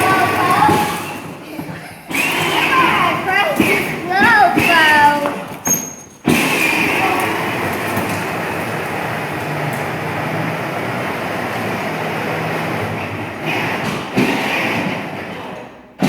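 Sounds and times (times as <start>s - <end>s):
toy car motors running: 0.0s - 8.2s
plastic wheels rolling on floor: 0.0s - 15.6s.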